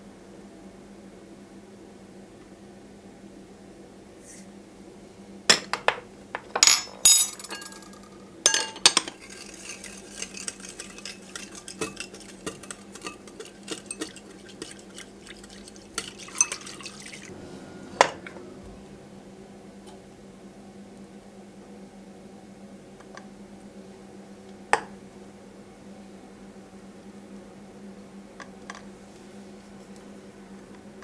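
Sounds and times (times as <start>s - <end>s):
metal spoon clinking on dish: 6.6s - 17.3s
quick light stirring taps: 8.5s - 17.4s.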